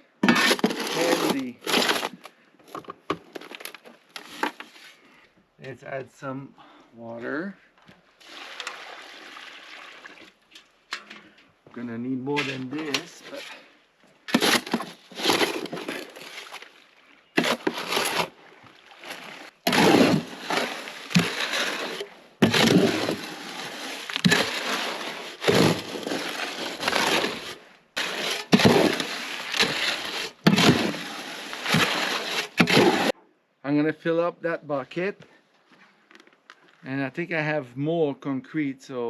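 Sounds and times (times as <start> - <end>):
shovel scraping wet concrete: 0.2 - 2.3, 12.3 - 13.7, 14.3 - 16.8, 17.4 - 33.2.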